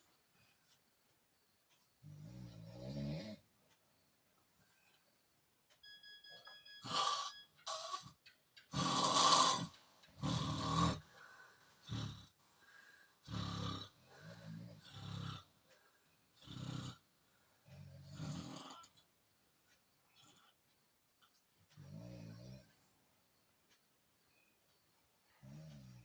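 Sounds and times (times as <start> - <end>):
rough rasping snores: 2.0 - 3.4, 6.8 - 11.2, 11.8 - 12.4, 13.2 - 15.5, 16.4 - 18.9, 20.2 - 20.6, 21.8 - 22.8, 25.4 - 26.0.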